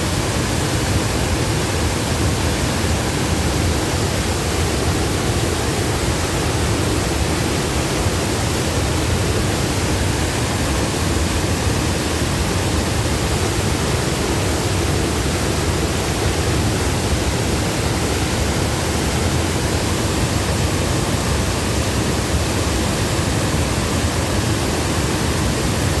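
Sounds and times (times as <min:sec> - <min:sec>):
waterfall rushing: 0:00.0 - 0:26.0.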